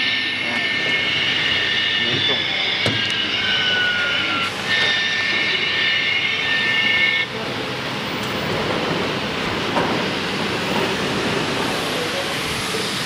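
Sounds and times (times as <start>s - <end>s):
wood router high whine: 0.0s - 7.6s.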